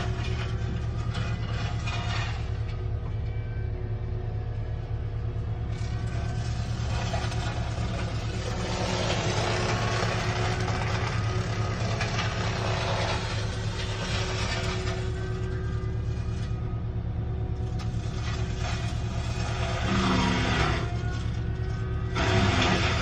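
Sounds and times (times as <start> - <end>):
diesel engine running: 0.0 - 23.0.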